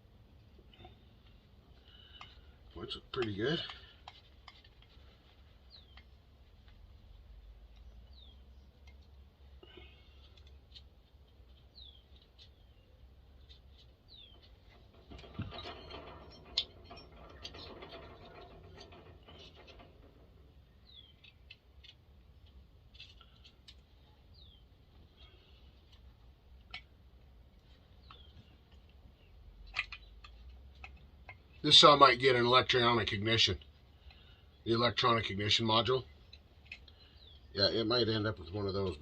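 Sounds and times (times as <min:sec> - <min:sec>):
small parts clicking and clattering: 0:13.4 - 0:24.0, 0:25.2 - 0:31.8, 0:36.1 - 0:37.4.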